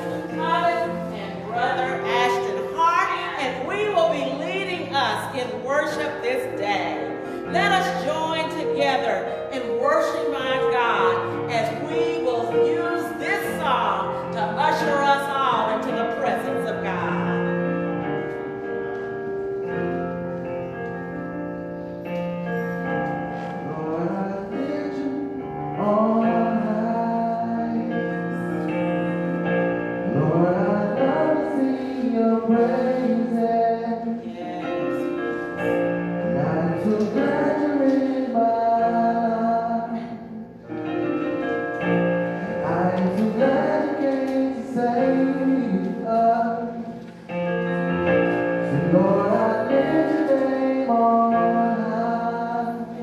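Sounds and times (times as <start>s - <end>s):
accompaniment chords: 0.0s - 53.0s
man and woman singing: 23.6s - 28.5s, 30.1s - 35.2s, 36.3s - 40.3s, 42.6s - 46.9s, 48.7s - 53.0s.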